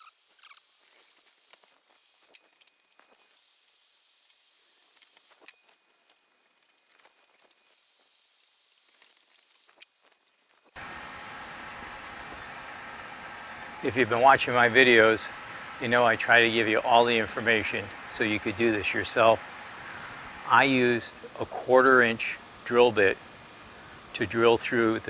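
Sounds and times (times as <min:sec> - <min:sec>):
faint steady hiss: 0:10.8 - 0:25.0
low even noise: 0:10.8 - 0:25.0.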